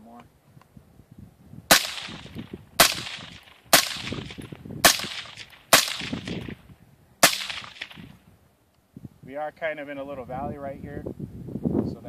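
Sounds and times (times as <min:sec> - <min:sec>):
gunshot echo off valley: 0:01.7 - 0:06.6, 0:07.2 - 0:08.1
suppressed rifle shots: 0:01.7 - 0:06.6, 0:07.2 - 0:08.2.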